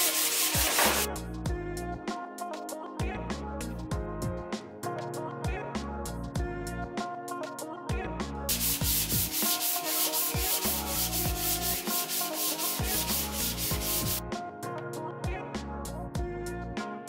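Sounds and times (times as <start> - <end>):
sanding car bodywork: 0.0 - 1.1, 8.5 - 14.2.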